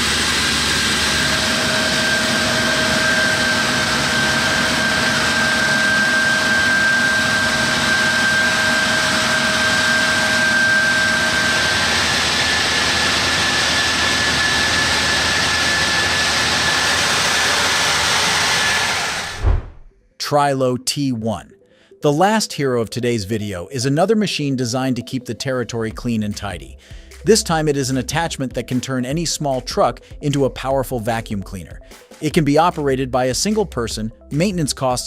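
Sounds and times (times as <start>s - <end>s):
air blower rushing with fan whine: 0.0s - 19.9s.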